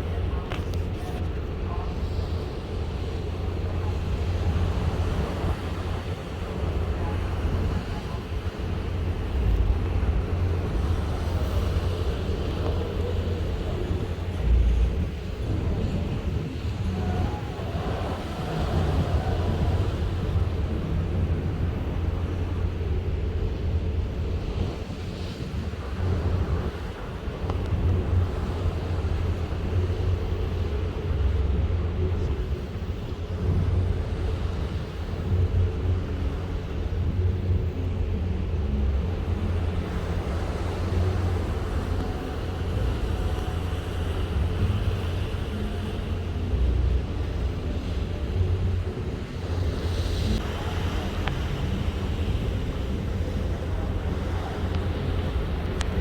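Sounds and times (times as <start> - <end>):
wind buffeting microphone: 0.0 - 56.0
wind whistling: 1.9 - 32.6.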